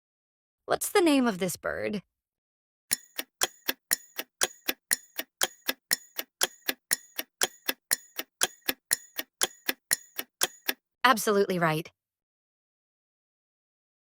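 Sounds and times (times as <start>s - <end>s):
clock ticking: 2.9s - 10.8s.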